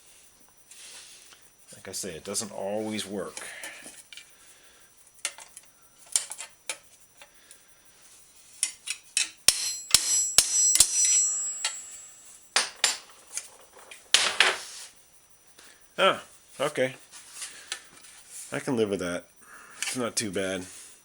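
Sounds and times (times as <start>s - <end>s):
hammer striking metal punch: 9.2s - 13.0s.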